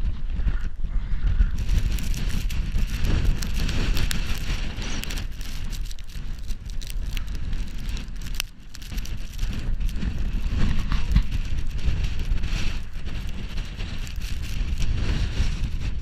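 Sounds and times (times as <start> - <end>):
wind buffeting microphone: 0.0 - 16.0
sharp ticks: 1.6 - 15.1.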